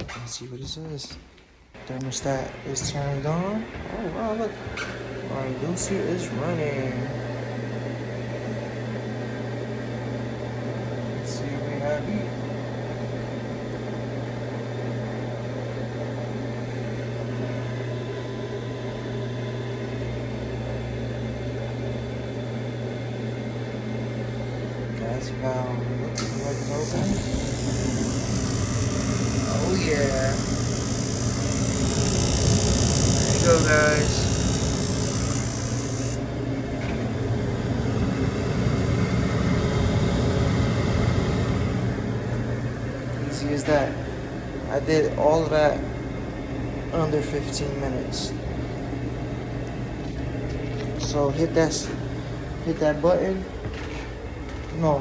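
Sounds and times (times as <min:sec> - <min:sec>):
heater motor humming: 0:00.0 - 0:55.0.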